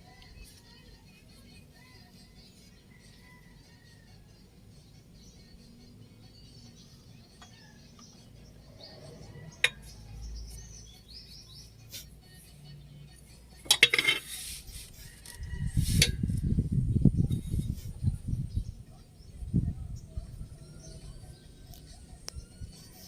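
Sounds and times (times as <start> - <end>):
metal tools clinking: 13.6 - 14.4.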